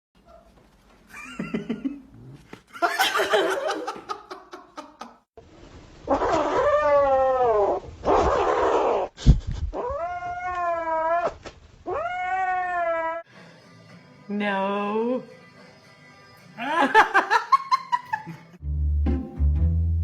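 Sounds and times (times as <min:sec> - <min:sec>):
people laughing: 0:02.8 - 0:05.2, 0:16.6 - 0:18.6
cat yowling: 0:06.1 - 0:09.1, 0:09.8 - 0:13.2.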